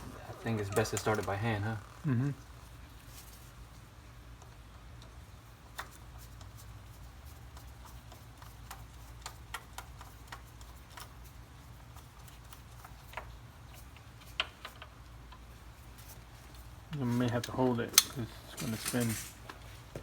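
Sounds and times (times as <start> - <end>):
steady low hum: 0.0 - 14.2.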